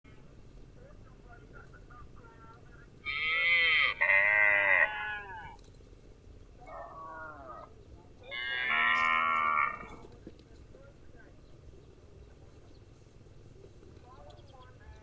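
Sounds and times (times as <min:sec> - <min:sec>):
farm animal bleating: 0:03.0 - 0:05.6, 0:07.2 - 0:10.1.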